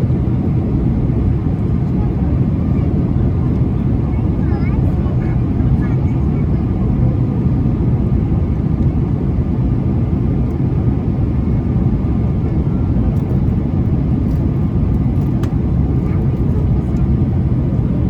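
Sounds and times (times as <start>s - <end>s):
jet engines humming: 0.0s - 18.0s.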